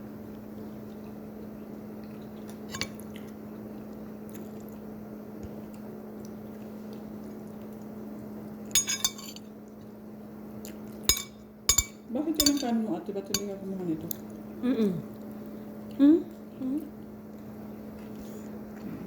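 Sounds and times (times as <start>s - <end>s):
steady low hum: 0.0s - 19.0s
faint chewing: 0.5s - 8.6s
cutlery clinking against dishes: 2.7s - 3.0s, 8.8s - 9.5s, 11.1s - 13.6s.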